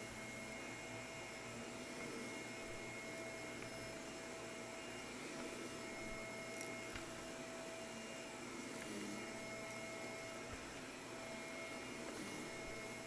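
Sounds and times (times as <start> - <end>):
vacuum cleaner running: 0.0 - 13.0.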